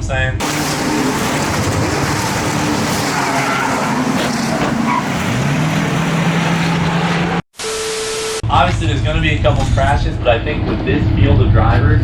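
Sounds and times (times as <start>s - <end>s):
tyre noise: 0.4s - 7.4s
race car engines: 0.4s - 7.5s.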